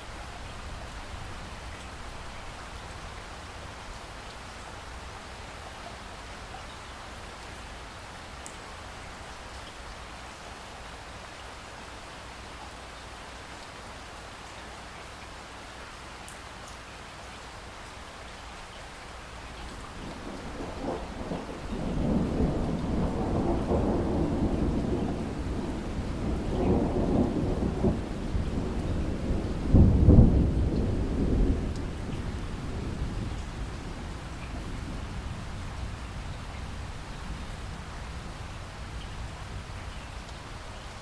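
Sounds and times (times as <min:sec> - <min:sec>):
steady rain falling: 0:00.0 - 0:41.0
rolling thunder: 0:19.7 - 0:39.7.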